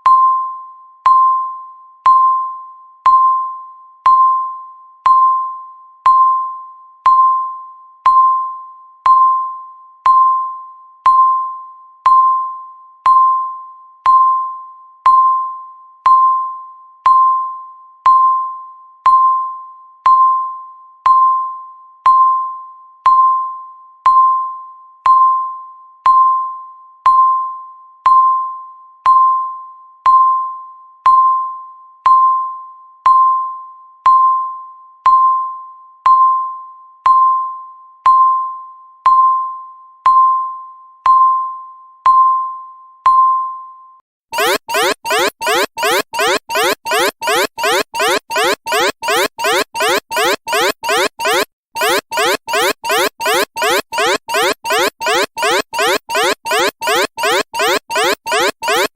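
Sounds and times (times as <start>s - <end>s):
countdown timer beeping: 44.4s - 58.9s.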